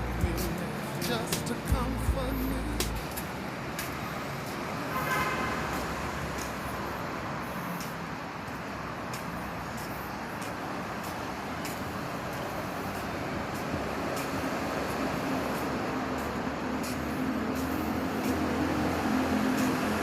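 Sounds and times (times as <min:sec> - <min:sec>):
engine and machinery noise: 0:00.0 - 0:20.0.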